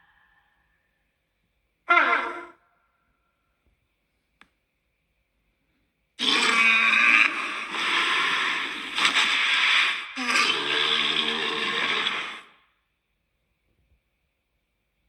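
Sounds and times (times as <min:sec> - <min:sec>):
faint click: 0:04.3 - 0:04.6
monster growling: 0:06.2 - 0:12.6.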